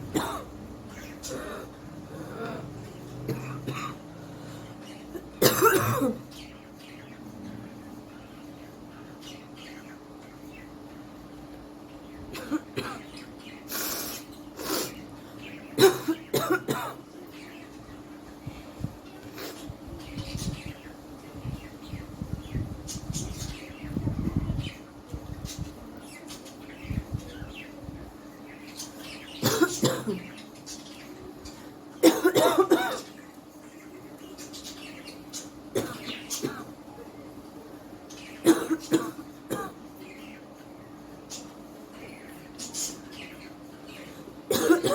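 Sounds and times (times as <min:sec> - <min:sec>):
woman coughing: 0:00.1 - 0:00.5, 0:05.4 - 0:06.2, 0:15.8 - 0:17.0, 0:29.4 - 0:30.3, 0:32.0 - 0:33.1, 0:35.8 - 0:36.7, 0:38.4 - 0:39.8, 0:44.5 - 0:44.9.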